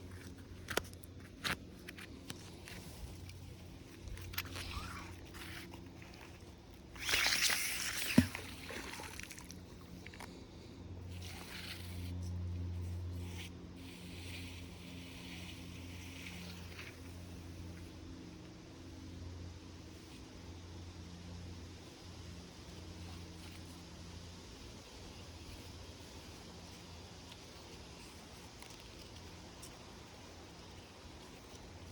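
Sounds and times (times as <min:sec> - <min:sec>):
water sloshing and splashing: 0:03.2 - 0:10.4.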